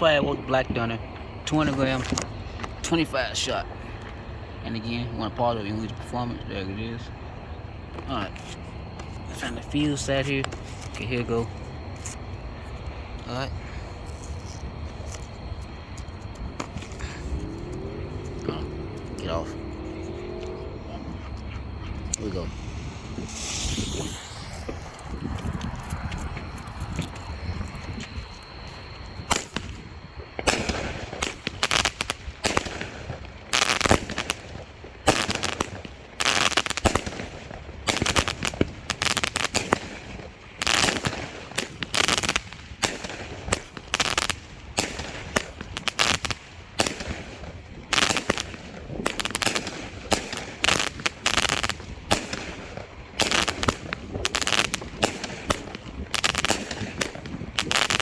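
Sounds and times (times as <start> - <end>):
fireworks cake shots banging: 22.1 - 27.3, 29.3 - 29.8, 30.4 - 58.0.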